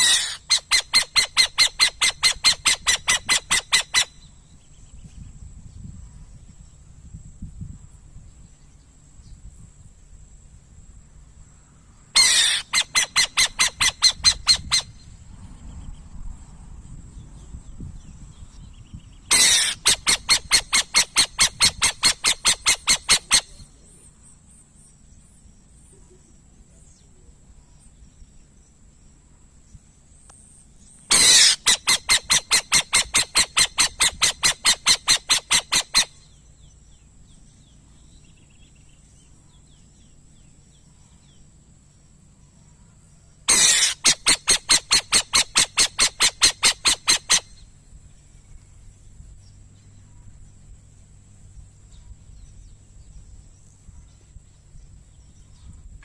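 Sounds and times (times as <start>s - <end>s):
owl chattering calls: 0.0s - 4.4s, 12.1s - 15.0s, 19.3s - 23.9s, 31.0s - 36.6s, 43.4s - 47.8s.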